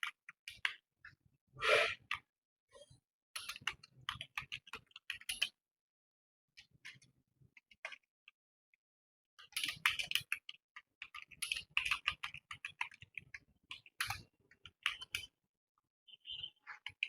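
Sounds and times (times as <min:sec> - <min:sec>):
fast keyboard typing: 0:09.6 - 0:15.3.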